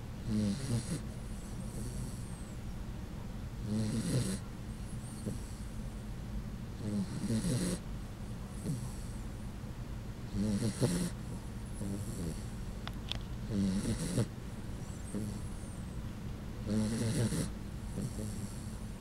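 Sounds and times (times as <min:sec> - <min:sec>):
dog snoring: 0:00.2 - 0:02.5, 0:03.6 - 0:05.8, 0:06.8 - 0:07.8, 0:08.6 - 0:09.2, 0:10.3 - 0:12.5, 0:13.4 - 0:14.3, 0:14.9 - 0:15.8, 0:16.6 - 0:19.0
dog breathing softly: 0:00.5 - 0:02.6, 0:03.9 - 0:06.0, 0:06.8 - 0:09.4, 0:13.4 - 0:19.0.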